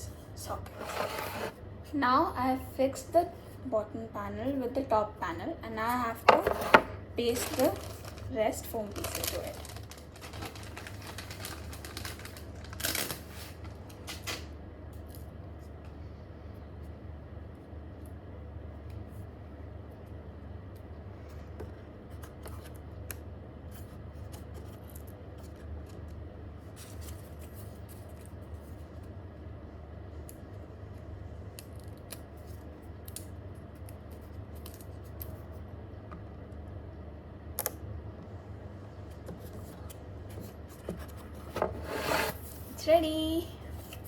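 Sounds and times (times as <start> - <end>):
steady low hum: 0.0 - 44.0
paper backing peeling: 7.2 - 14.5.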